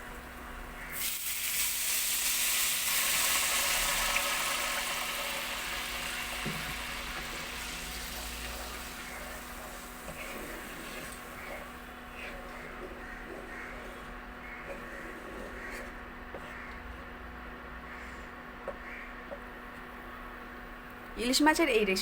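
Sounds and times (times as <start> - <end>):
water hissing in hot oil: 0.8 - 12.4.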